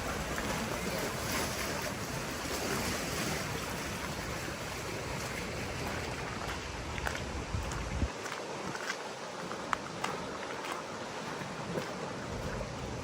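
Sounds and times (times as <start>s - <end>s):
wind on microphone: 0.0s - 8.9s.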